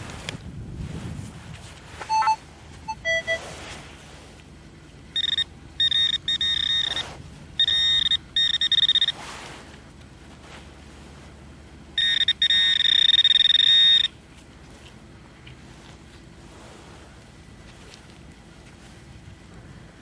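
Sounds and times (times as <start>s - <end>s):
rapid high-pitched pulsing beep: 2.1s - 3.4s, 5.2s - 9.2s, 12.0s - 14.1s
metal detector beeping: 2.1s - 3.6s, 5.1s - 9.2s, 12.0s - 14.2s.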